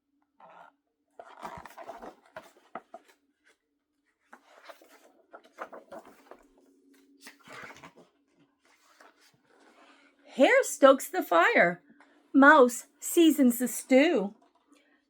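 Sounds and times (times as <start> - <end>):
book pages rustling: 0.4 - 10.1.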